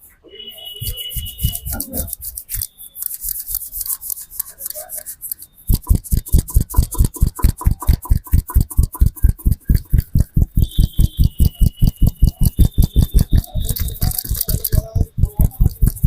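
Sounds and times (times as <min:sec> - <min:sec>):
percussive massage strikes: 0:00.8 - 0:02.6, 0:05.7 - 0:16.0
hands rubbing hair: 0:00.8 - 0:16.0.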